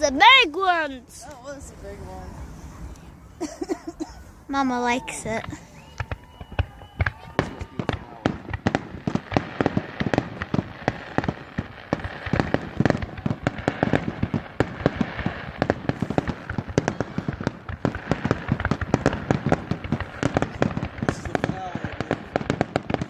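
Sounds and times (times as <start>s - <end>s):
fireworks bangs and crackles: 3.4s - 23.0s.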